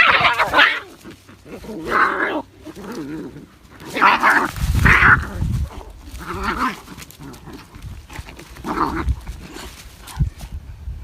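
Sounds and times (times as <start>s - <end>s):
cats growling and yowling: 0.0s - 9.8s
cats hissing: 0.0s - 10.2s.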